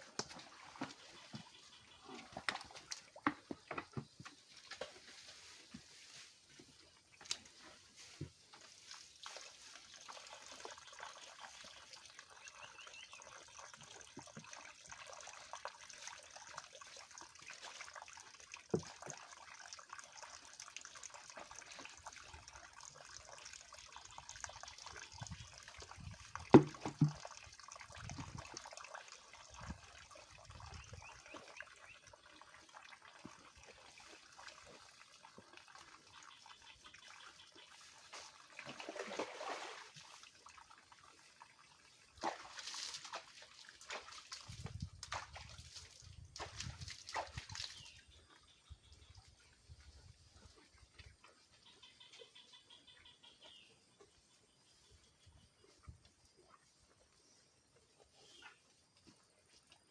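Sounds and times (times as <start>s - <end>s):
water trickling: 8.6s - 49.3s.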